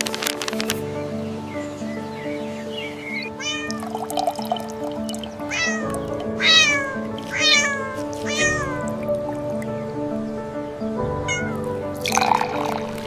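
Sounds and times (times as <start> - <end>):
background music: 0.0 - 13.0
kitten meowing: 3.2 - 4.0, 5.5 - 9.3, 11.3 - 11.7.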